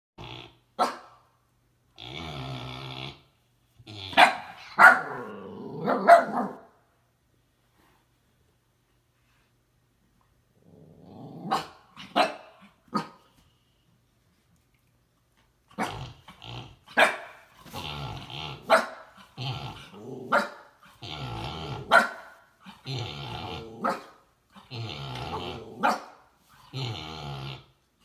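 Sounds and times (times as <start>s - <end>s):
pig snoring: 0.2s - 0.7s, 2.0s - 4.2s, 15.8s - 17.0s, 17.6s - 20.3s, 20.9s - 22.0s, 22.7s - 24.0s, 24.6s - 25.8s, 26.6s - 27.8s.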